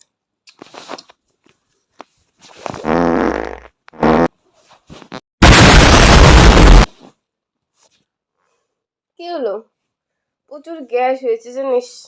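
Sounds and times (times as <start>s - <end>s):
fart noises: 2.5s - 4.3s.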